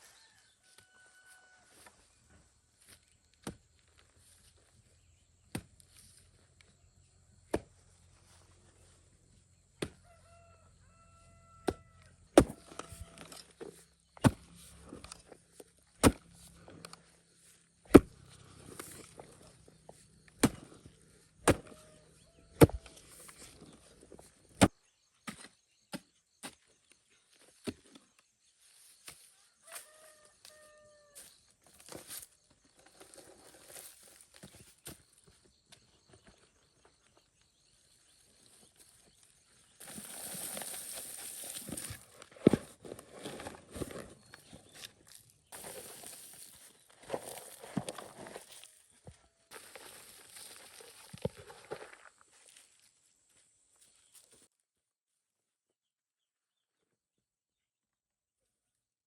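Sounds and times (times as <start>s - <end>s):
chopping strikes: 16.0s - 16.3s, 20.4s - 20.7s, 21.4s - 21.8s, 22.6s - 22.9s.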